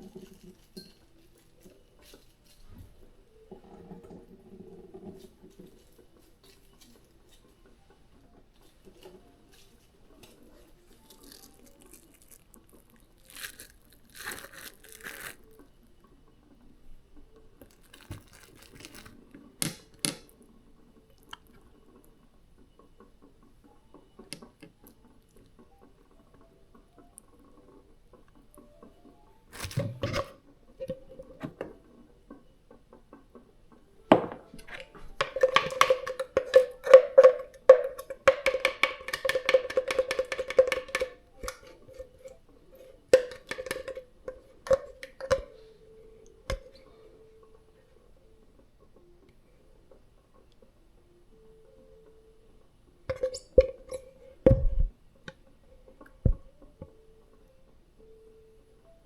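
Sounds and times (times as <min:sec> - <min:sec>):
hands rustling in kitchen: 0:08.5 - 0:15.6, 0:17.6 - 0:19.3, 0:29.5 - 0:30.3.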